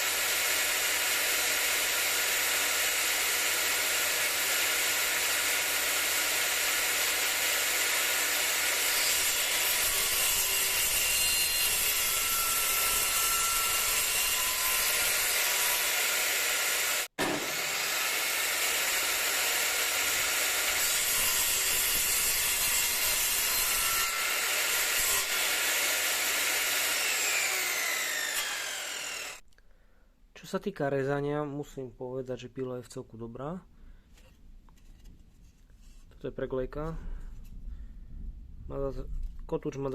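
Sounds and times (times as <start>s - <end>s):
table saw cutting wood: 0.0s - 29.4s
saw blade spinning down: 12.1s - 29.4s.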